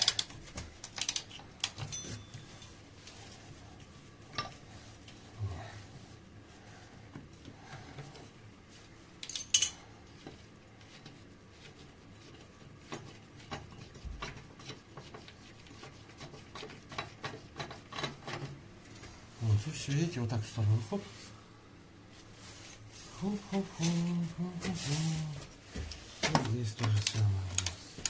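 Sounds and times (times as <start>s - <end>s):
metallic clink: 9.2s - 9.8s.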